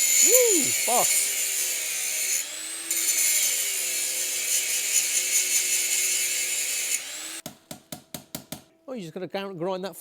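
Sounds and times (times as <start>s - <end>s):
angle grinder grinding steel: 0.0s - 7.4s.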